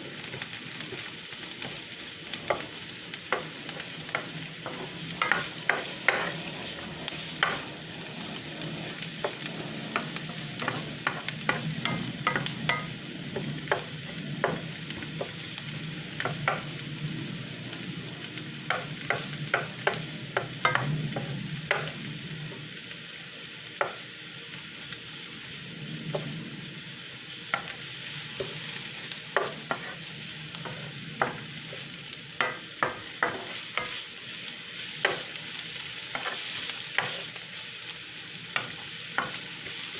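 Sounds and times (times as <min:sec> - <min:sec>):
food sizzling in a pan: 0:00.0 - 0:39.9
utensil scraping a pan: 0:03.3 - 0:12.9.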